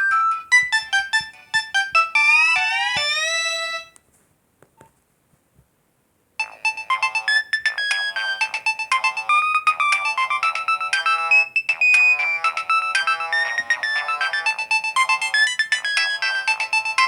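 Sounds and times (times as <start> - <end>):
fast polyphonic ringtone melody: 0.0 - 3.9, 6.4 - 17.0
polyphonic ringtone chord: 6.4 - 17.0.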